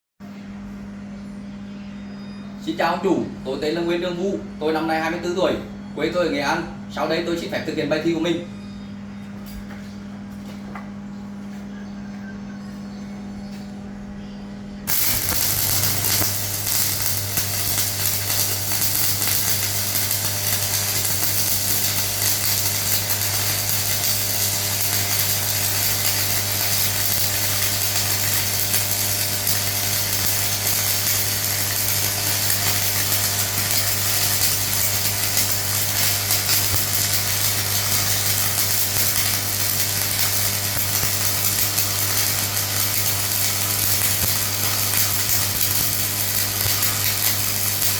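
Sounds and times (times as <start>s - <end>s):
welding machine hum: 14.8s - 47.9s
welding arc crackling: 14.9s - 47.9s.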